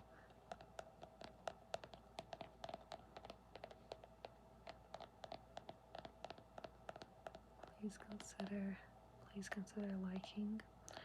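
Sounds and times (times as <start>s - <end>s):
fingertip tapping on object: 0.0s - 8.6s.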